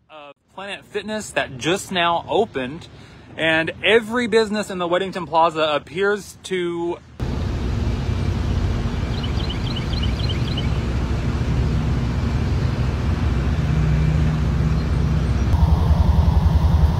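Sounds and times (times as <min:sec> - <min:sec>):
louder engine rumble: 0:07.2 - 0:16.9
vehicle engine running: 0:07.2 - 0:16.9.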